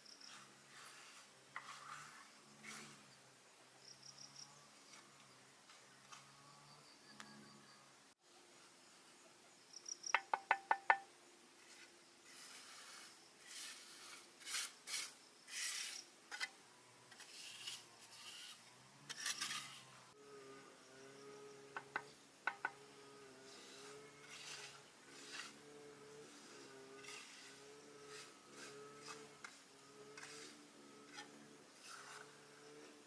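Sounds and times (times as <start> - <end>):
tool rasping scrapes: 0.2 - 3.2, 11.6 - 20.0, 23.4 - 33.0.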